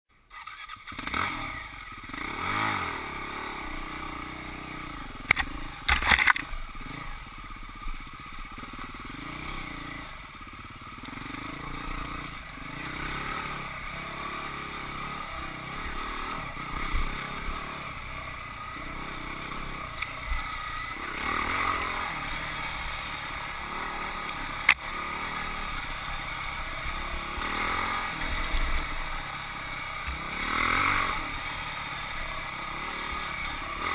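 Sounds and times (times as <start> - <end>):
dirt bike engine revving: 0.1 - 33.9
sharp crack: 5.2 - 6.6.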